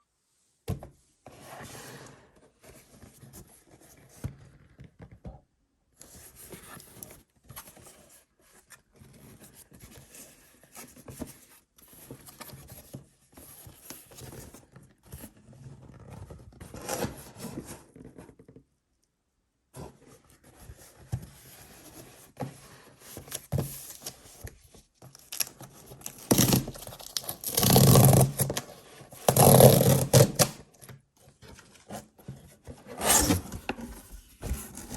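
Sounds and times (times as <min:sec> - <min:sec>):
packaging rustling and scraping: 0:19.8 - 0:34.9.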